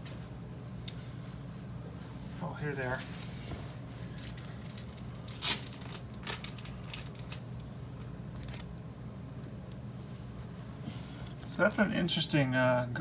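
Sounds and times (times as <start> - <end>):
steady low hum: 0.0 - 13.0
cards rustling in plastic sleeves: 4.0 - 7.5, 8.4 - 8.7.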